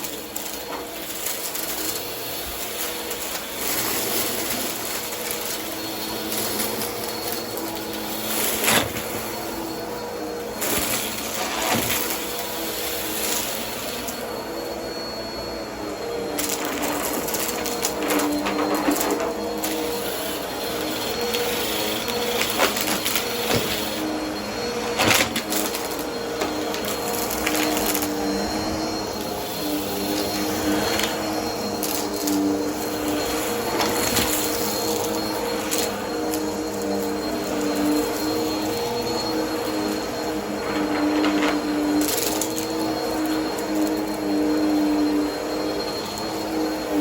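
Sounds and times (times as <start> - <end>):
vacuum cleaner running: 0.0 - 47.0
debris crackling in vacuum: 21.2 - 38.4.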